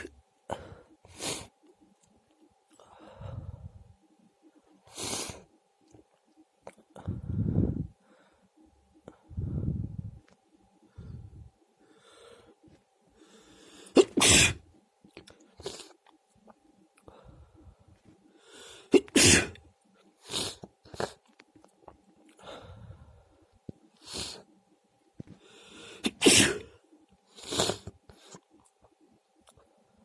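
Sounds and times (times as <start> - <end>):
person sneezing: 13.9 - 14.6, 18.9 - 19.6, 26.0 - 26.7.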